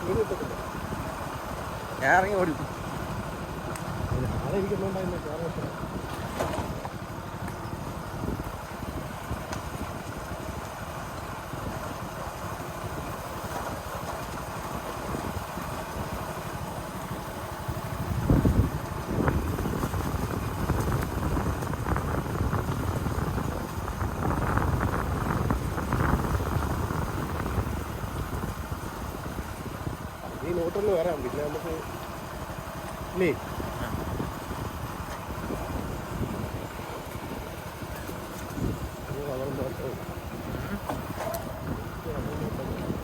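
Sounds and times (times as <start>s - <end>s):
motorcycle engine running: 0.0s - 43.0s.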